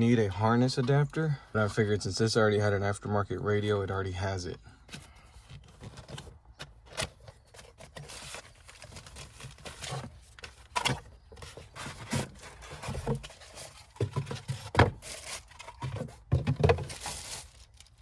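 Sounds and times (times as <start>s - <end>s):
packaging rustling: 7.1s - 18.0s.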